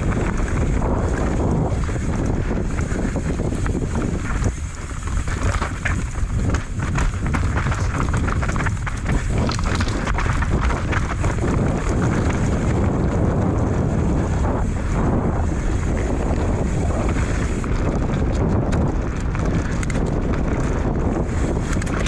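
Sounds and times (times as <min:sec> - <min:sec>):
wind buffeting microphone: 0:00.0 - 0:22.0
tyres running over dirt: 0:03.4 - 0:12.9
bike rattling knocks: 0:04.8 - 0:11.4.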